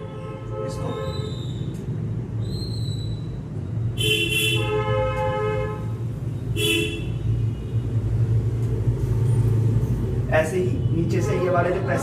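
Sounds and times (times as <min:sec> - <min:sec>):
vehicle horn tooting: 0:04.0 - 0:05.9, 0:06.6 - 0:07.2.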